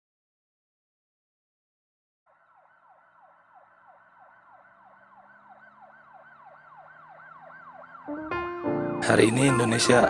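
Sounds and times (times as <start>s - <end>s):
siren yelp: 2.3s - 8.7s.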